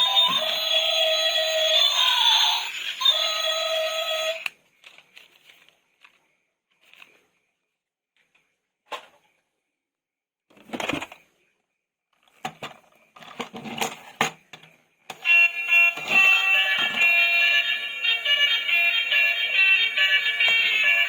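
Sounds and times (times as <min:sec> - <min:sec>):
plastic toys clicking and rustling: 0:04.8 - 0:06.2.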